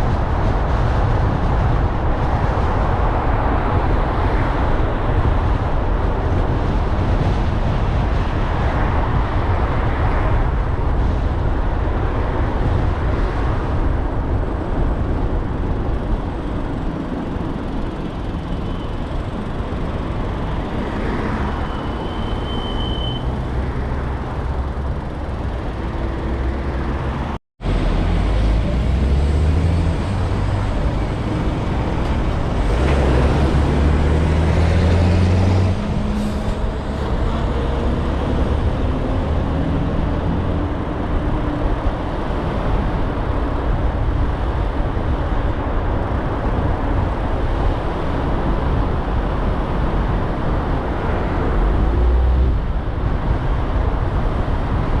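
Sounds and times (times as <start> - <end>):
car engine and road noise: 0.0 - 55.0.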